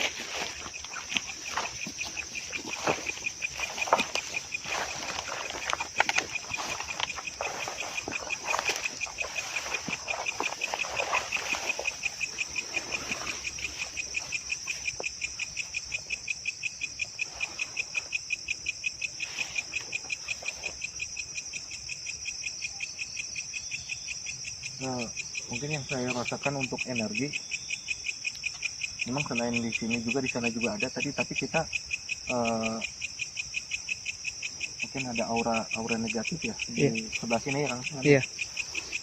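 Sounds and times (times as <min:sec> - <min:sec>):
footsteps through undergrowth: 0:00.0 - 0:15.8
high insect buzz: 0:00.0 - 0:39.0
insects chirping: 0:00.0 - 0:39.0.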